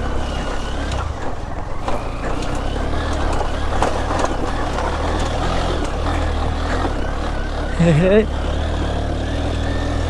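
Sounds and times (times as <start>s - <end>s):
bike knocks and rattles: 0.0s - 7.7s
motorcycle engine running: 0.0s - 10.0s.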